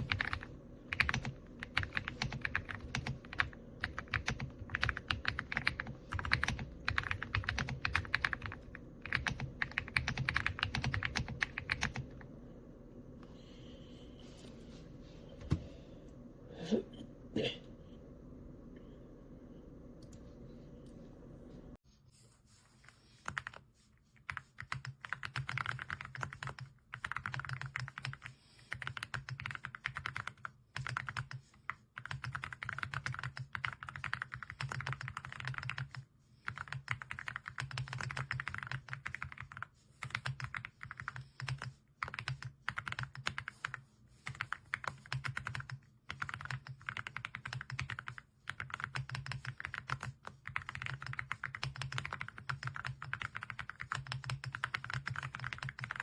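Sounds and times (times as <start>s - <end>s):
mechanical keyboard typing: 0.0s - 12.2s, 24.3s - 31.4s, 32.0s - 56.0s.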